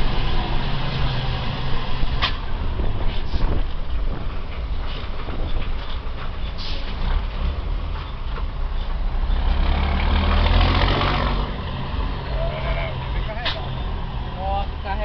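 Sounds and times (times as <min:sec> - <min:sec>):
diesel truck engine running loud: 0:09.0 - 0:14.8.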